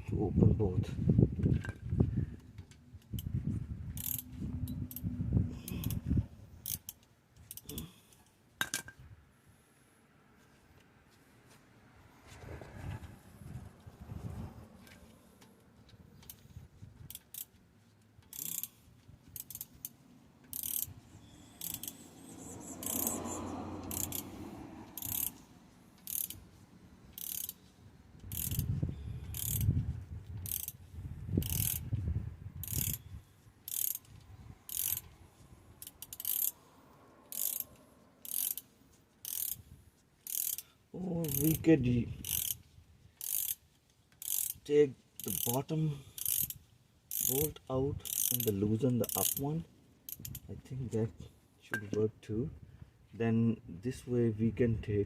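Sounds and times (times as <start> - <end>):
ratchet wrench clicking: 4.0 - 6.0, 6.6 - 7.9, 17.1 - 17.6, 18.2 - 23.2, 23.8 - 25.4, 26.0 - 26.5, 27.2 - 27.6, 28.2 - 28.7, 29.3 - 29.7, 30.4 - 30.8, 31.4 - 31.8, 32.6 - 33.0, 33.7 - 34.1, 34.7 - 35.1, 35.8 - 36.6, 37.3 - 39.6, 40.2 - 41.6, 42.2 - 42.6, 43.2 - 43.6, 44.2 - 49.4, 50.1 - 50.5.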